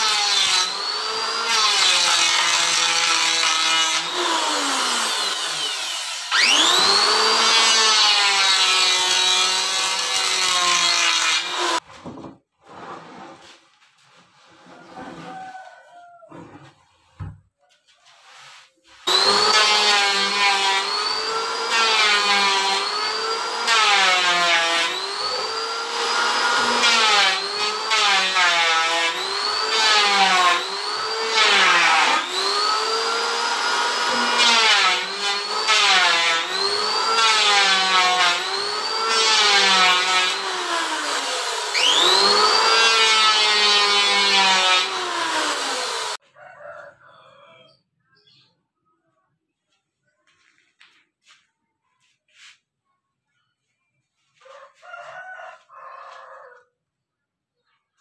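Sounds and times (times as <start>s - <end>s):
electric wood planer: 0.0s - 11.8s, 19.1s - 46.2s.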